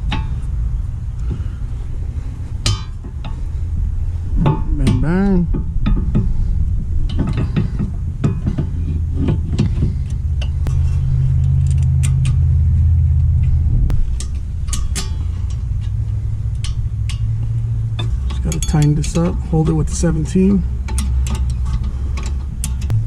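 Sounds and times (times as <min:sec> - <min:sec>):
low rumble: 0:00.0 - 0:23.0
metal tools clinking and knocking: 0:17.9 - 0:22.9.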